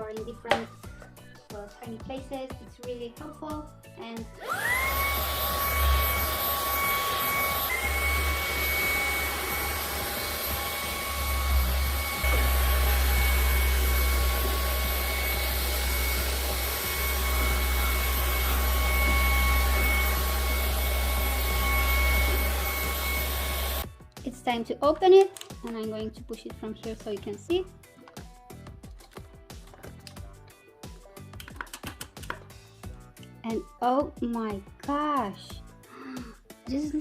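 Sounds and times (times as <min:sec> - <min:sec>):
vacuum cleaner motor whine: 0:04.4 - 0:23.9.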